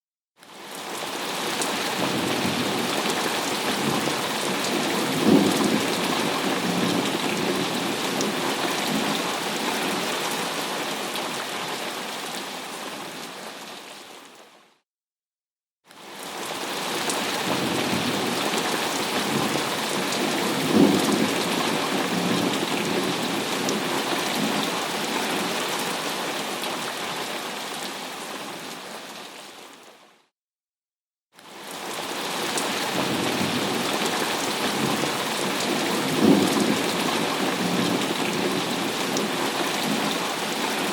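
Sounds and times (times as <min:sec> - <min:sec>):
heavy rain: 0:00.5 - 0:14.4, 0:16.0 - 0:29.8, 0:31.5 - 0:40.9
thunder rumbling: 0:05.0 - 0:07.7.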